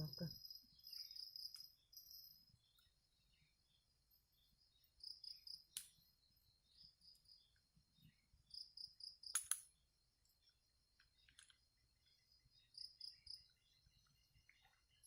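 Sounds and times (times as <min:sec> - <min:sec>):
crickets chirping: 0:00.0 - 0:15.0
sharp clicks: 0:09.2 - 0:09.7.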